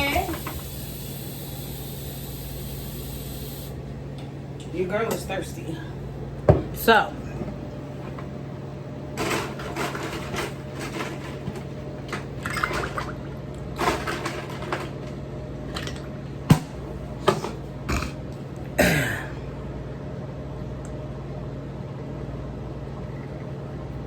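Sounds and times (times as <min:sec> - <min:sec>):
steady low hum: 0:00.0 - 0:24.0
person drinking water: 0:17.3 - 0:19.3.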